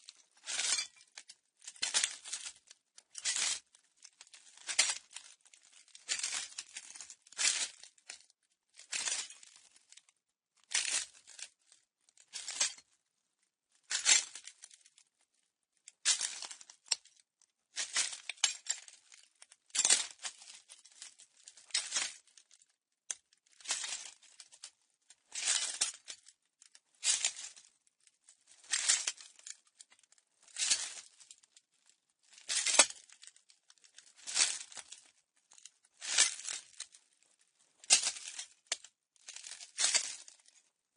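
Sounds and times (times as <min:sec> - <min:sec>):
footsteps crunching on broken glass: 0:00.4 - 0:01.1, 0:04.3 - 0:07.6, 0:08.8 - 0:09.8, 0:32.3 - 0:33.3, 0:34.1 - 0:36.6, 0:37.9 - 0:40.6.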